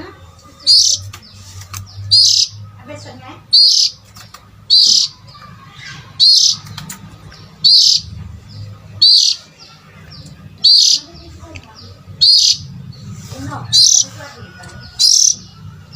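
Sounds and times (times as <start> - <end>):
bird call: 10.6 - 11.1.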